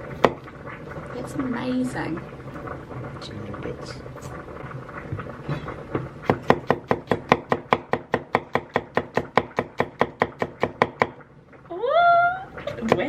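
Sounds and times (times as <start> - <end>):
knife chopping on cutting board: 6.3 - 11.1.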